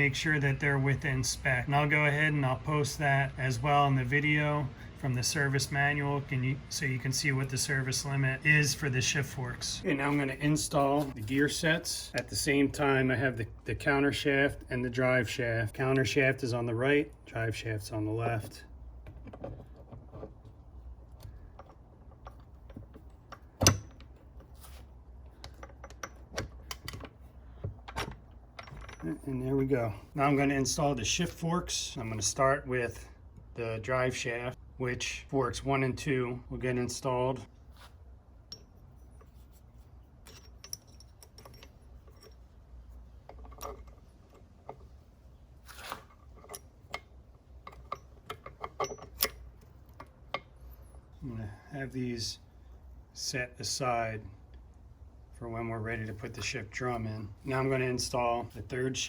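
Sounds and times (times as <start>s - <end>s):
metal parts clicking and tapping: 18.4s - 24.6s, 25.2s - 29.3s, 38.4s - 39.6s, 40.2s - 45.0s, 45.8s - 51.0s
metal gears clicking and clinking: 40.2s - 42.6s, 46.2s - 50.7s.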